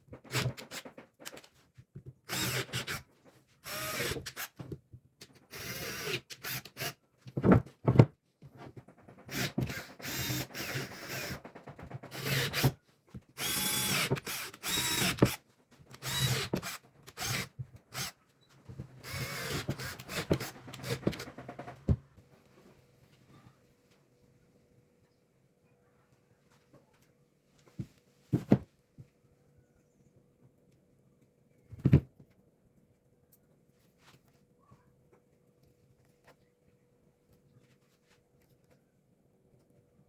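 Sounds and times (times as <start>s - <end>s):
power tool on wood: 9.3s - 12.7s, 13.4s - 15.4s, 16.0s - 18.1s, 19.0s - 21.9s.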